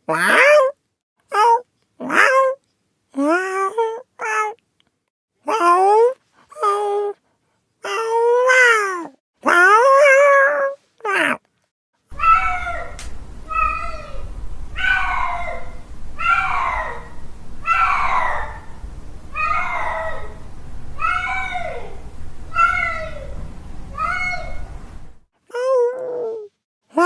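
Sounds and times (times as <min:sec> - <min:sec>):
tomcat yowling: 0:12.1 - 0:25.1
different cat calling: 0:12.1 - 0:25.2
low hum: 0:12.1 - 0:25.2.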